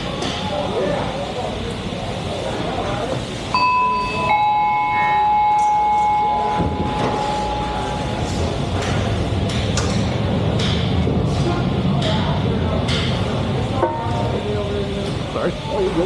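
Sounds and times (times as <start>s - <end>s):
factory floor noise: 0.0s - 16.0s
two-note chime: 3.6s - 8.0s.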